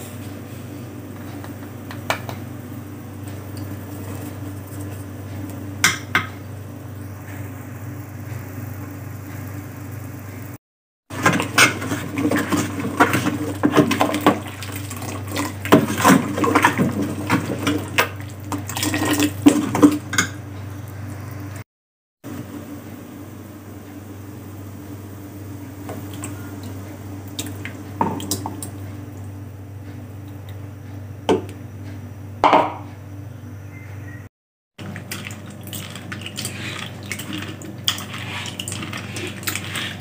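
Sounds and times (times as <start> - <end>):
steady low hum: 0.0 - 10.6, 22.3 - 40.0
metal utensils clinking and scraping: 35.8 - 40.0.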